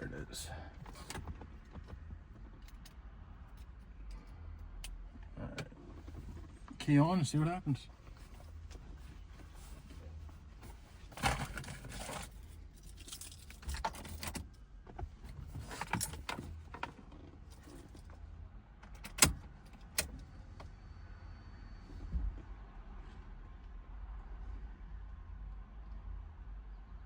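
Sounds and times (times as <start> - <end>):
car keys jangling: 11.3 - 14.6, 15.6 - 16.7.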